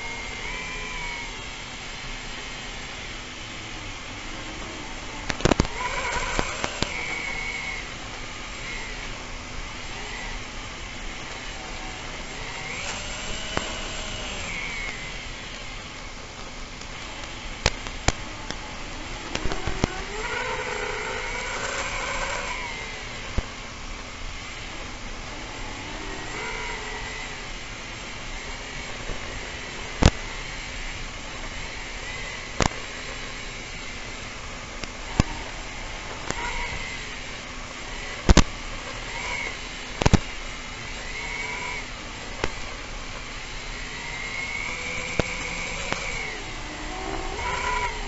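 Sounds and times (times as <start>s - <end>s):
quadcopter motors whining: 0.0s - 48.0s
sharp clicks: 4.2s - 9.2s, 11.1s - 18.6s, 38.2s - 42.7s.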